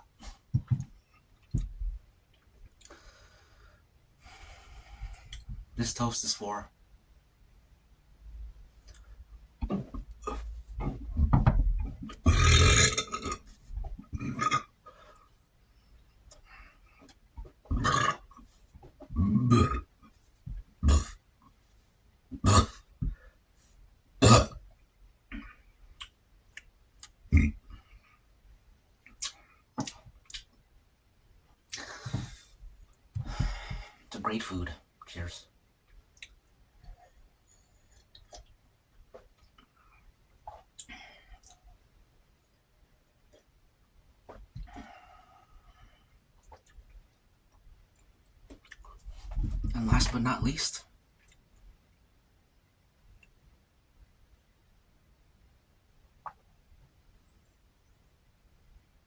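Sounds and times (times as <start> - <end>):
man burping: 12.2 - 13.4, 14.2 - 14.7, 19.2 - 19.9, 20.8 - 21.2, 22.4 - 22.8, 24.2 - 24.6, 27.3 - 27.7.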